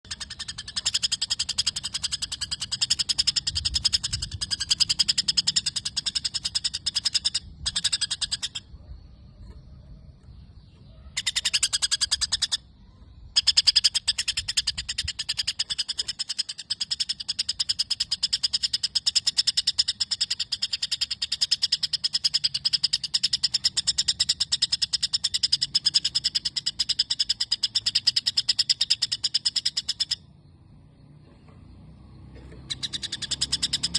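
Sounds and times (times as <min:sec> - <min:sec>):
songbird chattering trill: 0:00.0 - 0:30.4, 0:32.3 - 0:33.9.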